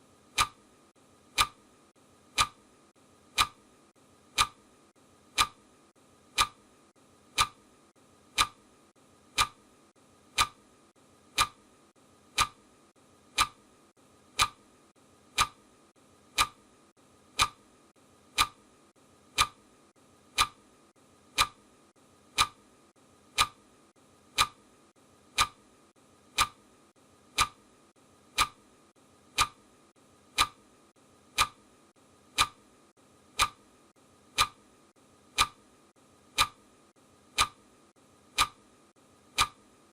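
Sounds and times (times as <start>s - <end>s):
faint steady hiss: 0.0s - 39.9s
clock ticking: 0.3s - 0.6s, 1.3s - 1.6s, 2.3s - 2.6s, 3.3s - 3.7s, 4.3s - 4.7s, 5.3s - 5.6s, 6.3s - 6.7s, 7.3s - 7.7s, 8.3s - 8.7s, 9.3s - 9.7s, 10.3s - 10.7s, 11.3s - 11.7s, 12.3s - 12.7s, 13.3s - 13.7s, 14.3s - 14.7s, 15.3s - 15.7s, 16.3s - 16.7s, 17.3s - 17.7s, 18.3s - 18.7s, 19.3s - 19.7s, 20.3s - 20.7s, 21.3s - 21.7s, 22.3s - 22.7s, 23.3s - 23.7s, 24.3s - 24.7s, 25.3s - 25.7s, 26.3s - 26.7s, 27.3s - 27.7s, 28.3s - 28.7s, 29.3s - 29.7s, 30.3s - 30.7s, 31.3s - 31.7s, 32.3s - 32.7s, 33.3s - 33.7s, 34.3s - 34.6s, 35.3s - 35.7s, 36.3s - 36.7s, 37.3s - 37.7s, 38.3s - 38.7s, 39.3s - 39.7s.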